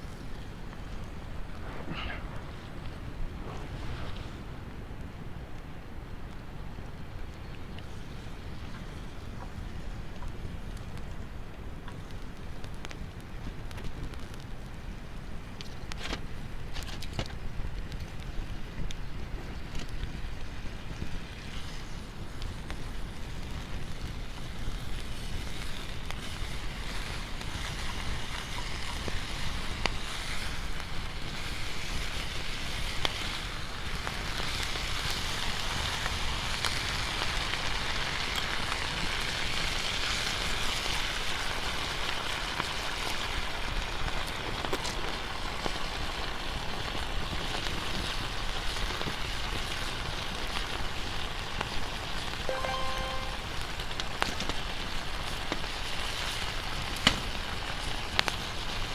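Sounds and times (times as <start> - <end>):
campfire crackling: 0.0 - 58.9
wind on microphone: 0.8 - 6.2.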